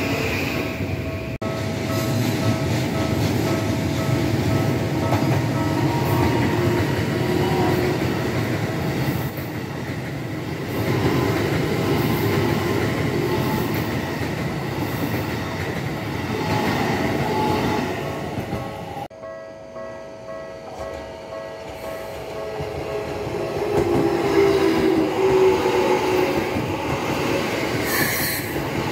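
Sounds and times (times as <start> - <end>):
train wheels rumbling on rails: 0.0 - 19.1, 20.3 - 28.9
crossing warning bell ringing: 0.8 - 9.1, 17.1 - 25.5.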